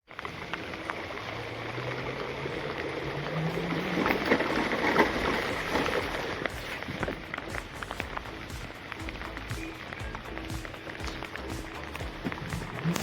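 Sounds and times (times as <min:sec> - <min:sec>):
electric scooter rumble: 0:00.0 - 0:13.0
low rising hum: 0:00.2 - 0:13.0.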